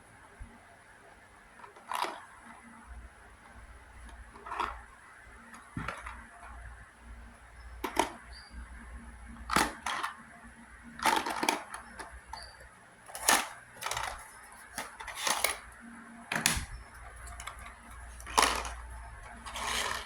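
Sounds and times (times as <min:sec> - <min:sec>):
packaging clicks and crackles: 0:13.1 - 0:20.0.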